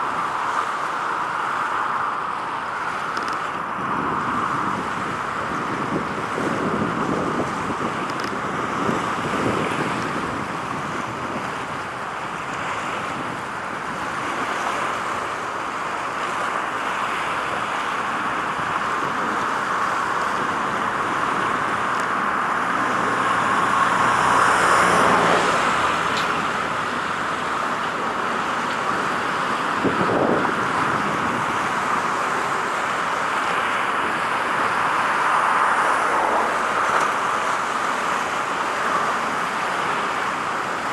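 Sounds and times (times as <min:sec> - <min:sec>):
road traffic passing: 0:00.0 - 0:40.9.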